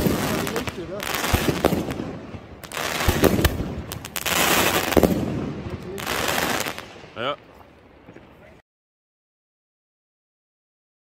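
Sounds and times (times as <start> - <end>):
fireworks bangs: 0.0 - 7.5
fireworks crackling: 0.0 - 8.5.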